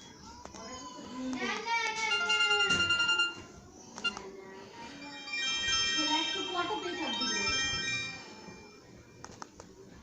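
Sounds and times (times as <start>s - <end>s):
electronic ringtone melody: 2.1s - 4.2s.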